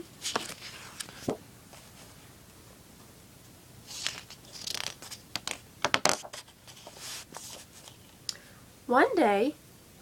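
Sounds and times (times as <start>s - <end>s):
paper rustling and crinkling: 0.2s - 2.2s, 3.9s - 8.1s.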